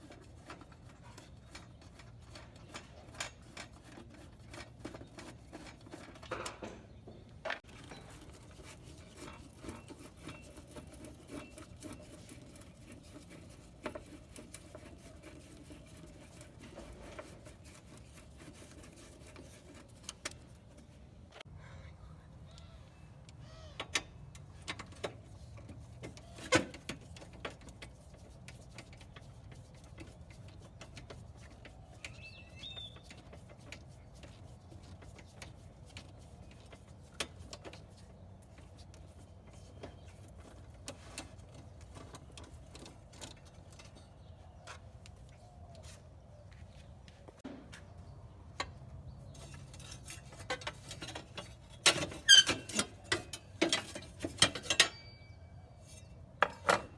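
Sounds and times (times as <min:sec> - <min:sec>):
bird chirping: 0:31.9 - 0:33.3
hand tools clicking and tapping: 0:49.4 - 0:55.2.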